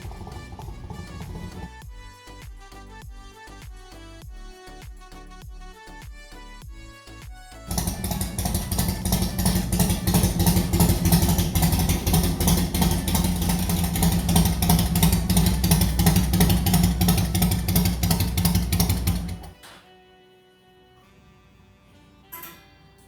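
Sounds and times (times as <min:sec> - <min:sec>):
motorcycle engine running: 0:00.0 - 0:01.9, 0:07.7 - 0:19.6.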